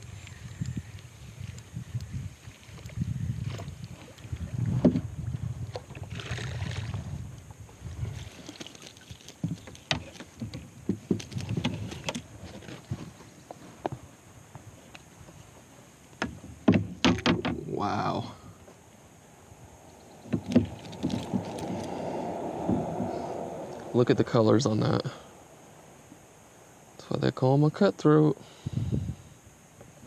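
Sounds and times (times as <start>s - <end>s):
water splashing: 2.4s - 13.3s, 18.9s - 26.6s
sharp clicks and knocks: 16.2s - 17.6s
handling noise: 18.6s - 22.0s.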